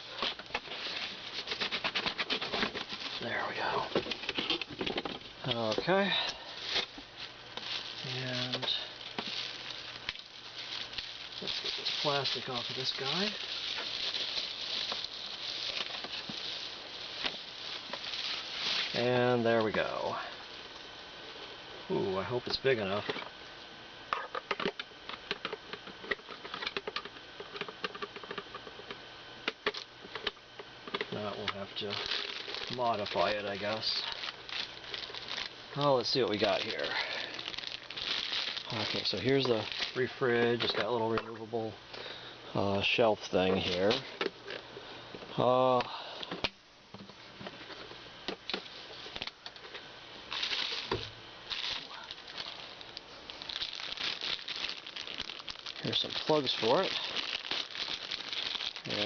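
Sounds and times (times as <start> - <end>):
packaging rustling: 0.0 - 20.2, 31.0 - 41.2, 48.6 - 59.0.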